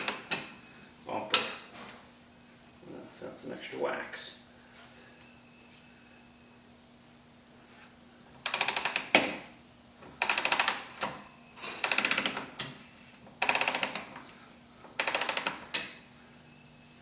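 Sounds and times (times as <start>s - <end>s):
ratchet wrench clicking: 10.2s - 10.8s, 13.4s - 14.1s, 15.0s - 15.8s.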